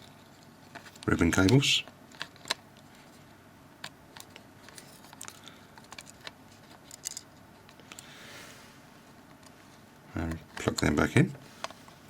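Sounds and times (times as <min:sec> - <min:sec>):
small clicks and taps of phone parts: 0:03.8 - 0:08.0.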